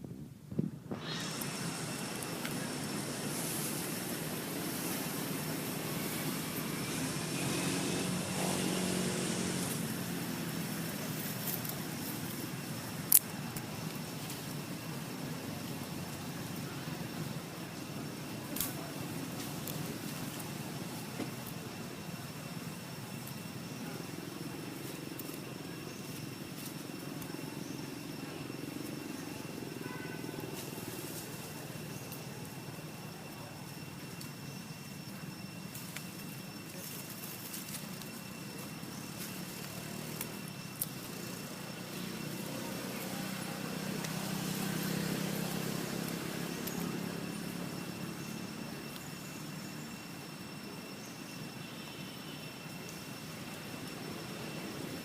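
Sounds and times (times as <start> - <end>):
faint high whine: 0.0 - 55.0
vehicle engine passing: 1.0 - 11.1.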